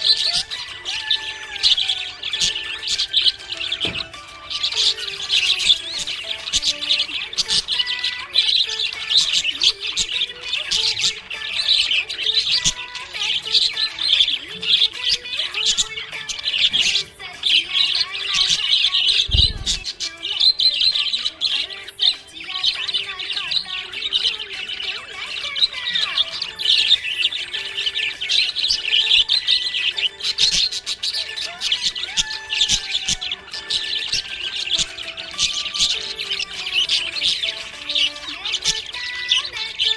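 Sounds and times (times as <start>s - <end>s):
budgerigars chirping and warbling: 0.0s - 39.9s
low thump: 19.3s - 19.9s.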